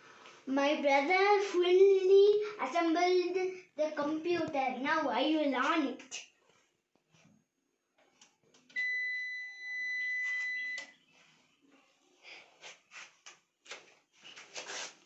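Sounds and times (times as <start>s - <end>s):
electronic power-on beep: 8.8s - 10.9s.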